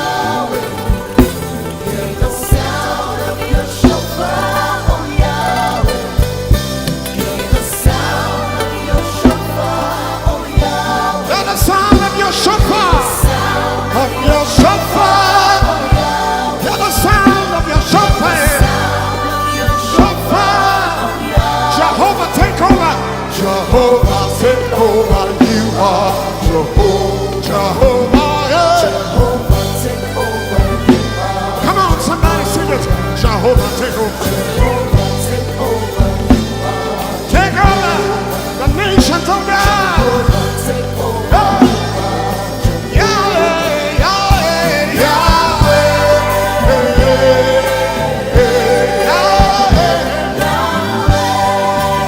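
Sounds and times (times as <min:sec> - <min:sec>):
band with drums and bass: 0:00.0 - 0:52.0
person singing: 0:00.0 - 0:52.0.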